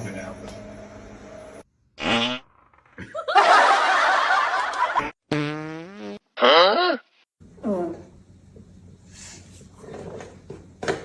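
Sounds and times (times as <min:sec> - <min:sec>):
fart noise: 0:02.0 - 0:03.1, 0:05.3 - 0:06.8.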